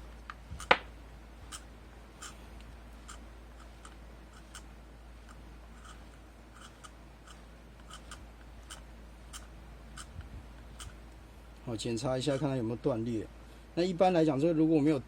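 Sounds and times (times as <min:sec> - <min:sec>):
small parts clicking and tapping: 0:00.2 - 0:00.9, 0:01.5 - 0:11.2.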